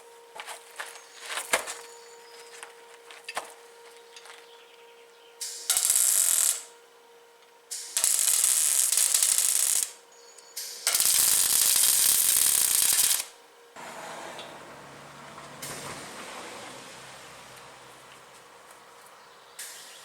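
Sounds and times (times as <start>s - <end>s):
welding bursts: 5.4s - 6.7s, 7.7s - 10.0s, 10.6s - 14.4s.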